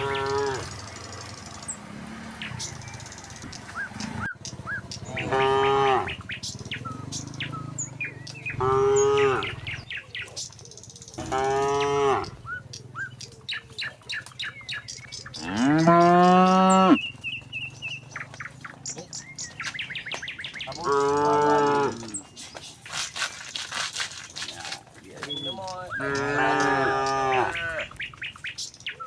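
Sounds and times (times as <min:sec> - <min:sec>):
cattle mooing: 0:00.0 - 0:04.3, 0:05.0 - 0:06.2, 0:07.2 - 0:09.8, 0:11.2 - 0:12.6, 0:15.3 - 0:17.0, 0:20.7 - 0:22.3, 0:25.9 - 0:28.0
small birds chirping: 0:00.0 - 0:29.0.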